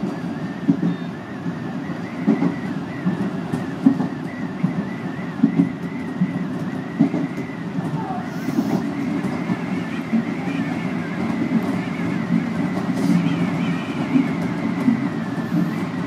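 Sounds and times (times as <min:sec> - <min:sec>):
train wheels rumbling on rail: 0:00.0 - 0:16.0.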